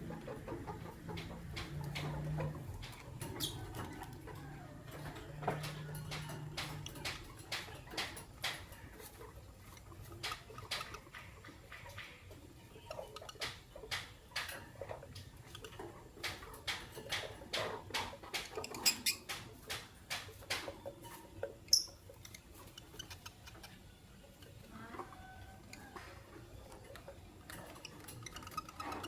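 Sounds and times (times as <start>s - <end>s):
birds clicking and scratching: 0.0s - 29.0s.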